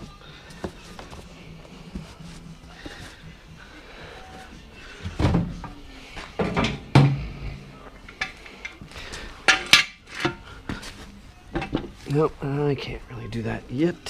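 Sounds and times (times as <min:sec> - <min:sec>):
tools knocking and clunking: 0:06.4 - 0:07.4, 0:09.4 - 0:10.8, 0:11.5 - 0:12.0.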